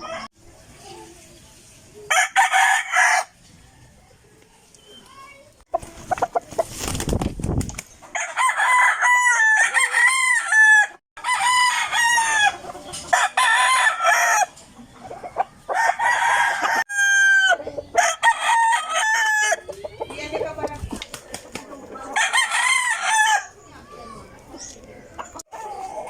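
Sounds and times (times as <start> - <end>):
roosters crowing: 0.0 - 0.3, 2.1 - 4.0, 8.0 - 20.6, 21.6 - 24.3.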